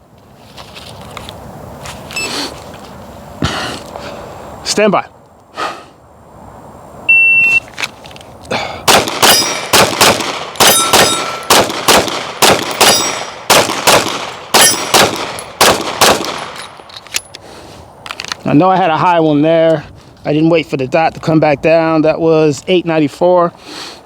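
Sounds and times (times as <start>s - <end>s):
shot timer beep: 7.1s - 7.6s
pistol shots: 8.9s - 16.7s
steel targets ringing: 9.2s - 9.7s, 10.6s - 11.6s, 12.7s - 13.5s.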